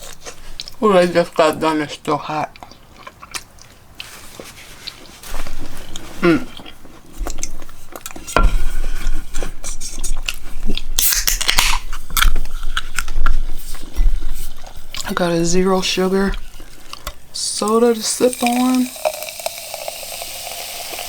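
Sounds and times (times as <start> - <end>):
wet chewing and crunching: 0.0 - 8.3, 9.1 - 17.4.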